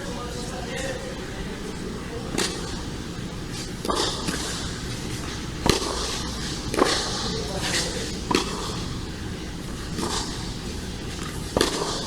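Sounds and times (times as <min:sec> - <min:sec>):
tennis ball struck by rackets: 0:02.3 - 0:02.8, 0:03.5 - 0:09.0, 0:09.6 - 0:12.0.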